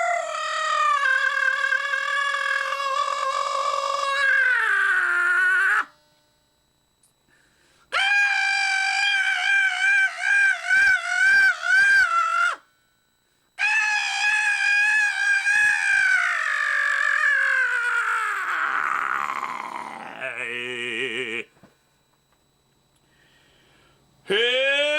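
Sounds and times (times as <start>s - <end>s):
person singing high shrill note: 0.0s - 6.0s, 7.9s - 12.7s, 13.6s - 21.5s, 24.3s - 24.9s.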